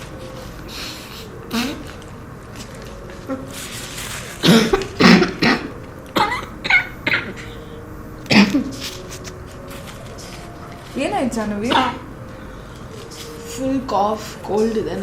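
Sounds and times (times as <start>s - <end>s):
person coughing: 4.3s - 7.6s, 8.3s - 8.8s.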